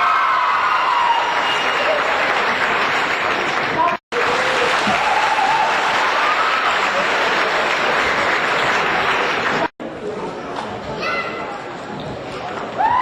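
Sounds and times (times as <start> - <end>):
crowd clapping: 0.0 - 9.8.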